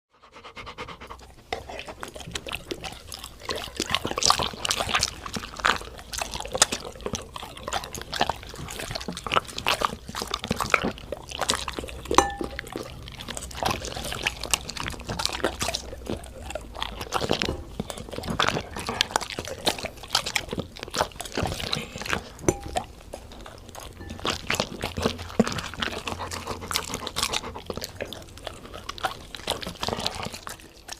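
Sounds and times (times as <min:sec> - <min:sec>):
dogs eating and lapping: 0:00.1 - 0:30.9.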